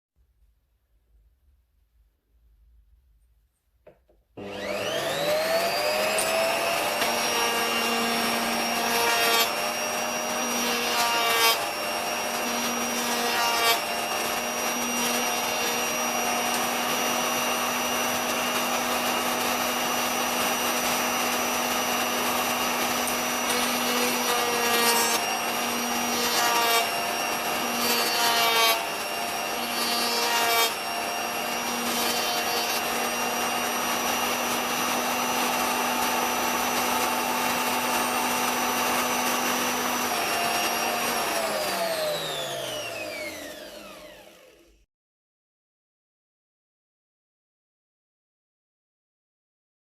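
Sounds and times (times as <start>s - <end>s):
cutter rasping on edges: 4.4s - 44.1s
router motor whining: 4.4s - 44.8s.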